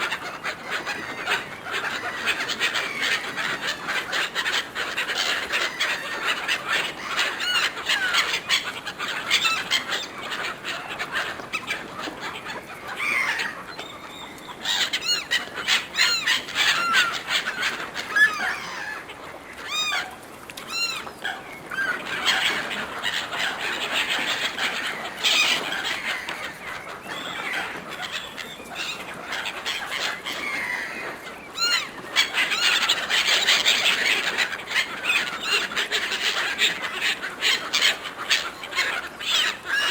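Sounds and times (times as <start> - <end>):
gulls calling: 0.0 - 39.9.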